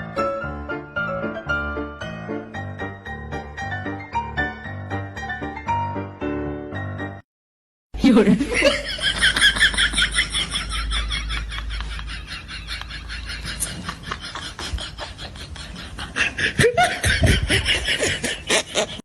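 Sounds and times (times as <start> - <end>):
rapid high-pitched laughing: 9.3 - 19.0.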